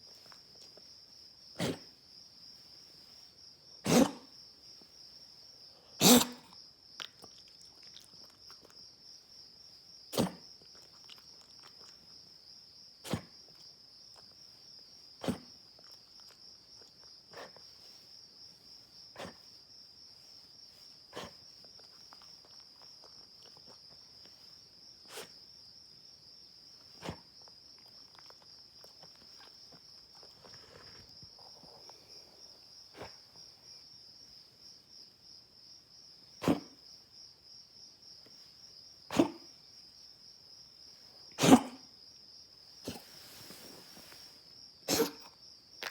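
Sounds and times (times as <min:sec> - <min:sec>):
night insects chirring: 0:00.0 - 0:45.9
short coughs: 0:01.6 - 0:01.9, 0:03.8 - 0:04.3, 0:06.0 - 0:06.5, 0:10.2 - 0:10.4, 0:15.2 - 0:15.6, 0:36.4 - 0:36.8, 0:39.1 - 0:39.5, 0:41.4 - 0:41.9, 0:44.8 - 0:45.4.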